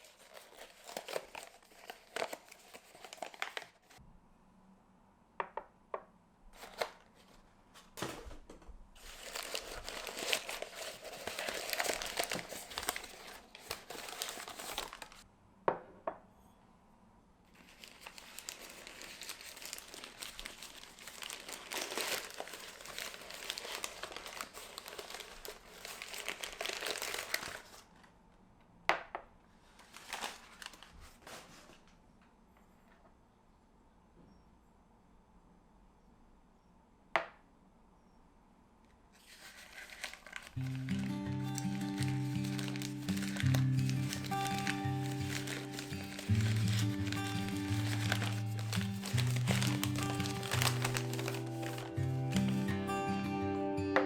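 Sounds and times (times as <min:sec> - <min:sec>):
packaging crinkling and rustling: 0:00.0 - 0:04.0, 0:06.6 - 0:15.3, 0:17.5 - 0:28.1, 0:29.6 - 0:32.0, 0:39.2 - 0:52.8.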